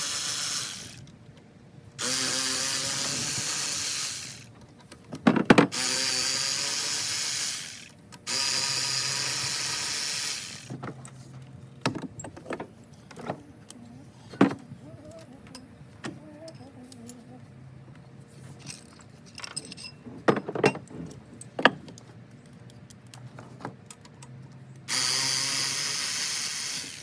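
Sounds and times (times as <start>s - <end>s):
metal tools clinking: 18.6s - 21.8s.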